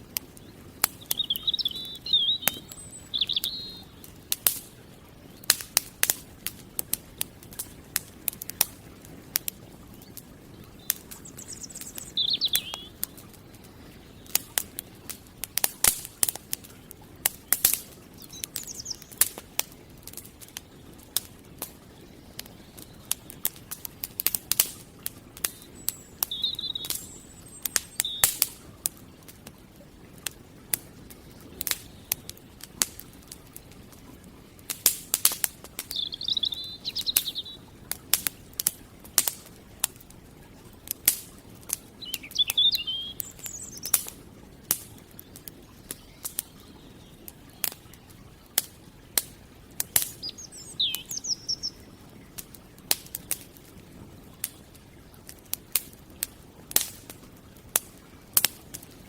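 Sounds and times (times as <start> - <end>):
small birds chirping: 0.0 - 56.3
campfire crackling and popping: 0.0 - 59.0.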